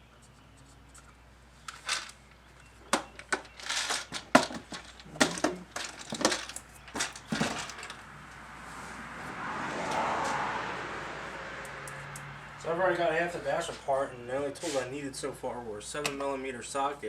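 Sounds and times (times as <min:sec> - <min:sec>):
plastic dash parts clicking and rattling: 0:01.0 - 0:08.0.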